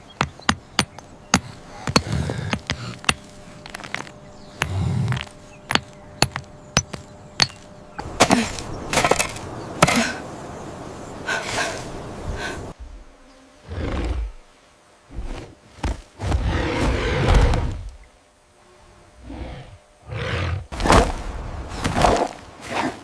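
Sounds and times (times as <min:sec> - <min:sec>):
sharp irregular knocks: 0:00.0 - 0:10.1
rough noisy sounds: 0:00.0 - 0:13.1.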